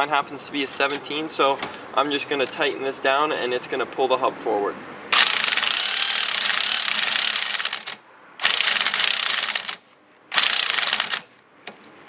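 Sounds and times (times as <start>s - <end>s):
ratchet tool rapid clicking: 5.1s - 11.3s.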